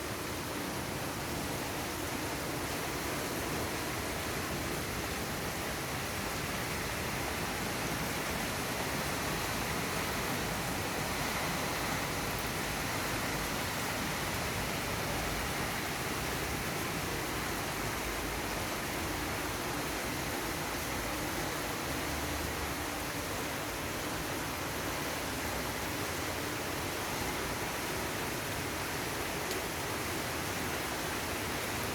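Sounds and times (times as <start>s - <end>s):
heavy rain falling: 0.1s - 31.9s.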